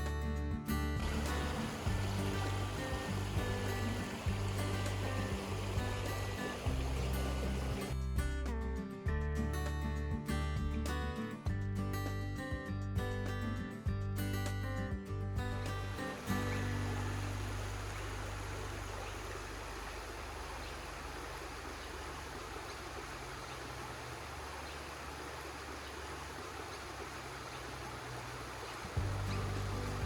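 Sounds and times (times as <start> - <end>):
background music: 0.0 - 18.8, 29.0 - 30.0
creek water over rocks: 1.0 - 8.0, 15.8 - 30.0.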